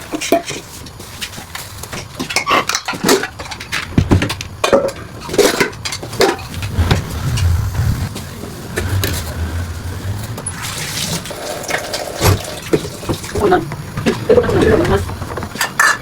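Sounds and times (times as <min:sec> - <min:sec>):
dishes and utensils clattering: 0:00.0 - 0:06.8, 0:10.4 - 0:16.0
low hum: 0:06.2 - 0:15.5.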